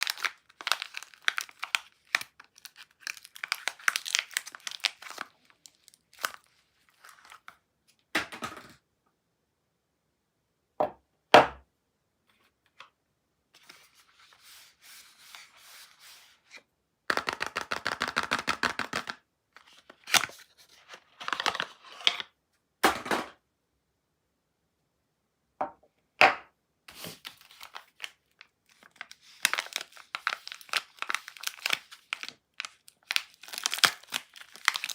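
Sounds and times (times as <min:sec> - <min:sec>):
wrappers crinkling and tearing: 0:00.0 - 0:07.5, 0:26.9 - 0:34.9.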